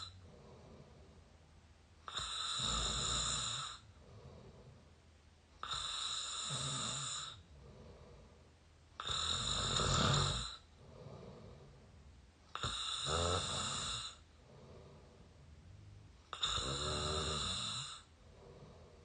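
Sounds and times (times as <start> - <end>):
person snoring through mouth: 0.0 - 0.4, 2.1 - 3.8, 5.6 - 7.4, 9.0 - 11.4, 12.5 - 14.2, 16.3 - 18.7
quiet breathing: 0.0 - 19.0.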